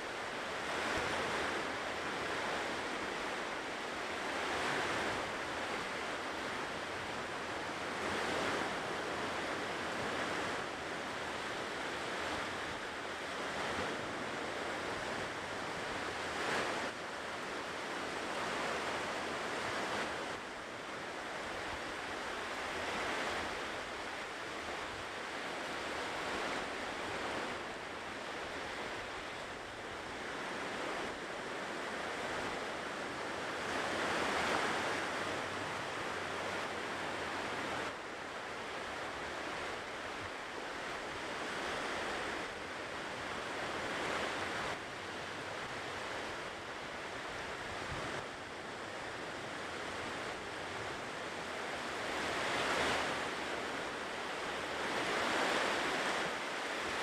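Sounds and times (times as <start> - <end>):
ocean waves breaking on shore: 0.0 - 57.0.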